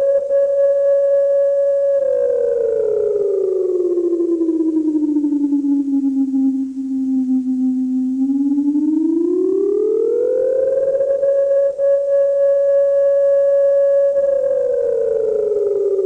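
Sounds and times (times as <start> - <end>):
siren wailing: 14.0 - 16.0.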